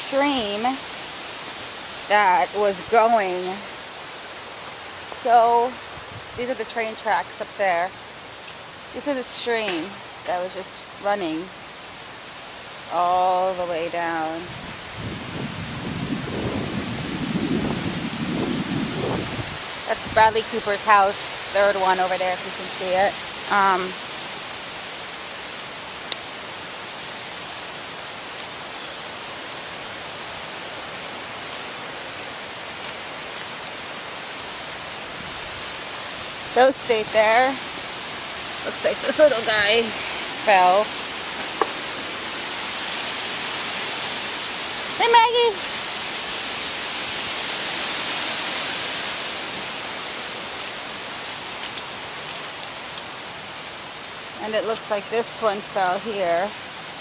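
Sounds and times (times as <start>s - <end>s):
stream rushing: 0.0s - 57.0s.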